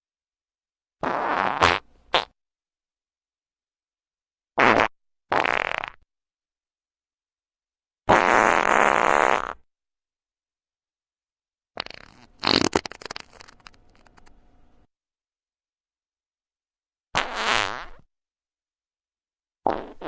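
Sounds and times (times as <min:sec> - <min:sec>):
farts: 0:01.0 - 0:02.4, 0:04.6 - 0:06.1, 0:08.1 - 0:09.7, 0:11.8 - 0:14.3, 0:17.2 - 0:18.1, 0:19.6 - 0:20.0.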